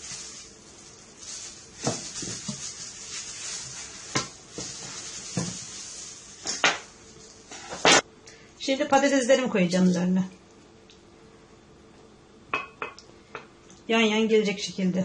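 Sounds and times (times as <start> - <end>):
dishes knocking and clinking: 12.5 - 13.5.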